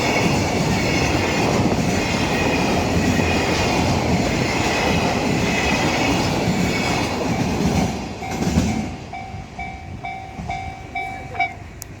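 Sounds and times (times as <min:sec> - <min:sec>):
freight train rumbling and clacking: 0:00.0 - 0:12.0
level crossing warning bell: 0:08.2 - 0:11.8.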